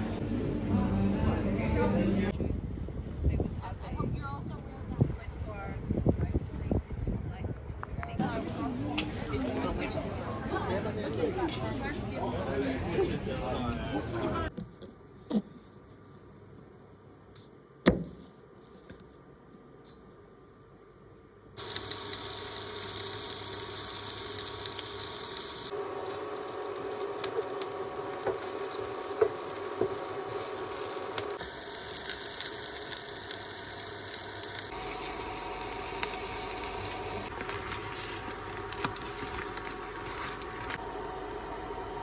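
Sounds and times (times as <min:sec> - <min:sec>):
food sizzling in a pan: 0:21.6 - 0:37.3.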